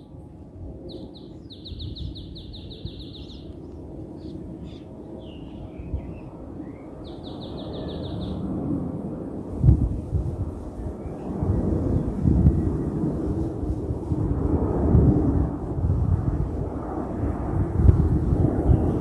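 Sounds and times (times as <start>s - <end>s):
jet taking off rumble: 7.5s - 19.0s.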